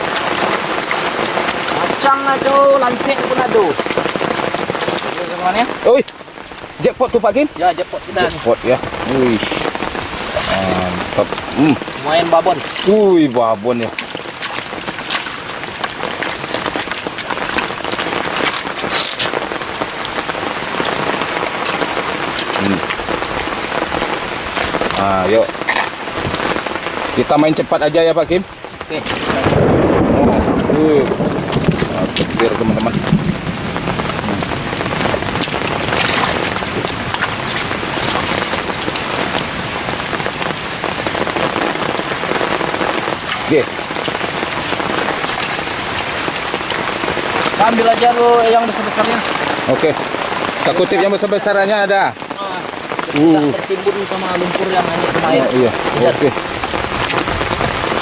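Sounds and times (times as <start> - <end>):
heavy rain: 0.0 - 58.0
man's voice: 6.8 - 14.0, 22.6 - 22.9, 31.9 - 33.0, 47.5 - 56.4.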